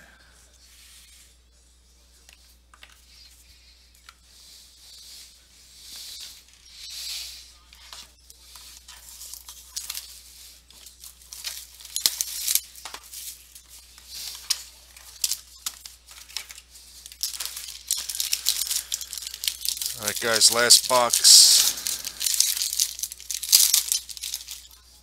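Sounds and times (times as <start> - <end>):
packaging crinkling and tearing: 14.1 - 24.9.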